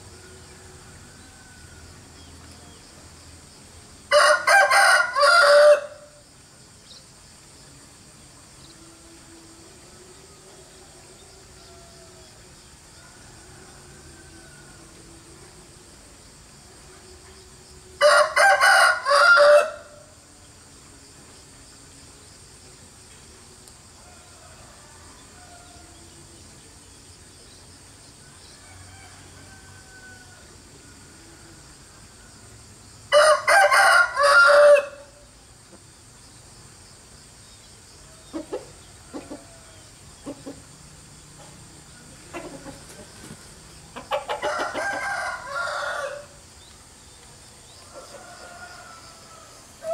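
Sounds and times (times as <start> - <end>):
rooster crowing: 0.1 - 2.0, 4.1 - 6.2, 10.7 - 15.0, 18.0 - 20.1, 24.0 - 26.2, 28.4 - 31.7, 33.1 - 35.2, 44.0 - 46.4, 47.8 - 49.9.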